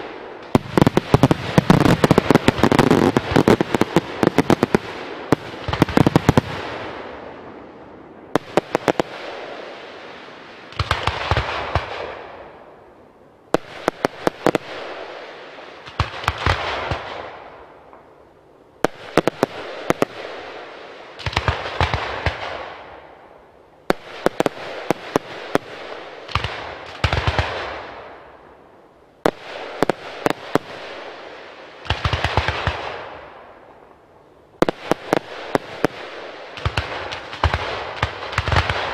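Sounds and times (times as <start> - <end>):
fireworks crackle: 0.0 - 7.2, 8.4 - 12.2, 13.6 - 17.3, 18.8 - 22.7, 23.9 - 28.0, 29.2 - 33.1, 34.6 - 38.9
fireworks bangs: 0.0 - 7.5, 8.2 - 12.5, 13.5 - 17.6, 18.8 - 22.9, 23.9 - 28.2, 29.2 - 33.8, 34.6 - 38.9.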